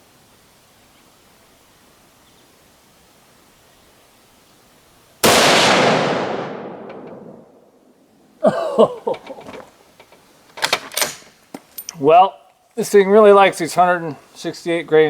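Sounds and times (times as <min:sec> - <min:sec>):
rifle shot echoing: 0:05.2 - 0:07.7.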